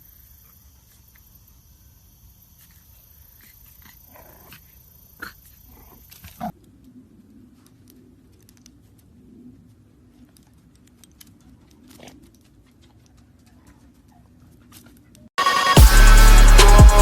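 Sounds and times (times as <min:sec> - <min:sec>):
low steady drone: 0:15.4 - 0:17.0.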